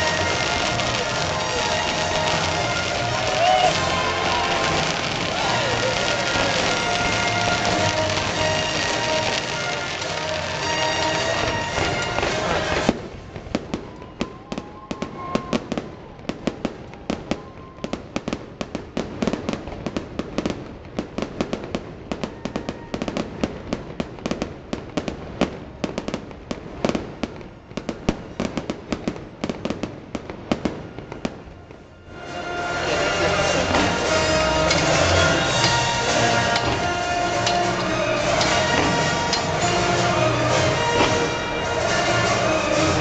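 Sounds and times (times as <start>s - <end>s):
music: 0.0s - 12.9s, 31.9s - 43.0s
fireworks bangs and cracks: 0.0s - 43.0s.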